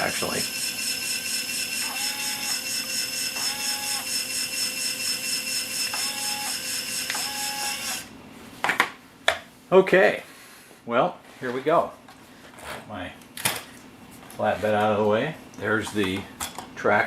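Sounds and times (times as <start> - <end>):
short high-pitched whines: 0.0 - 8.1
toy motors whirring and clattering: 0.0 - 8.1.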